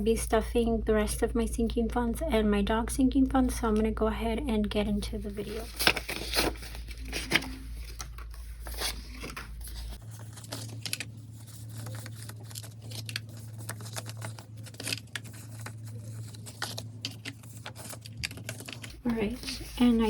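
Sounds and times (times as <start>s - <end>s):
banknotes rustling and flicking: 4.7s - 20.0s.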